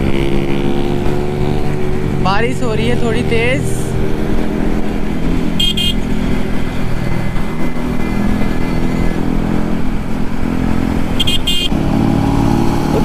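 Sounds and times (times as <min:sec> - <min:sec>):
motorcycle engine running: 0:00.0 - 0:13.0
wind rumble: 0:00.0 - 0:13.0
short horn beeps: 0:05.6 - 0:06.0, 0:11.2 - 0:11.7.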